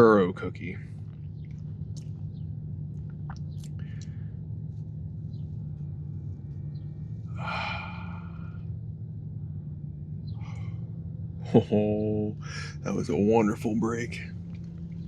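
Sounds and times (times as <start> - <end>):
steady low hum: 0.0 - 15.0
soft mouth clicks: 3.1 - 4.1
long breathy sigh: 7.4 - 8.6.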